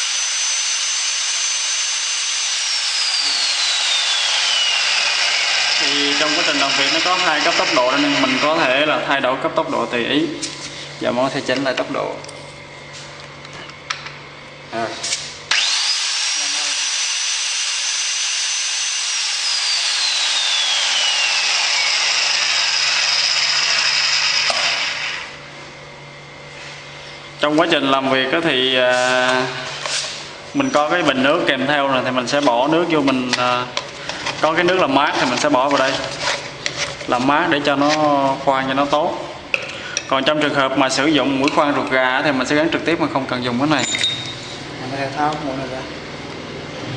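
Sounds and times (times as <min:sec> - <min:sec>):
drill motor whirring: 0:00.0 - 0:09.0, 0:15.5 - 0:25.4.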